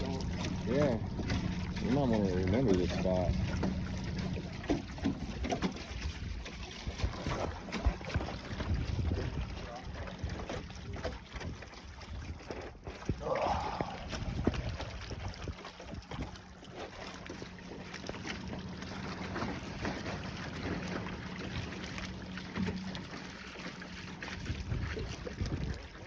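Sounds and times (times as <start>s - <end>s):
wind rumbling on microphone: 0.0s - 16.4s, 24.2s - 26.0s
boat motor humming: 0.0s - 26.0s.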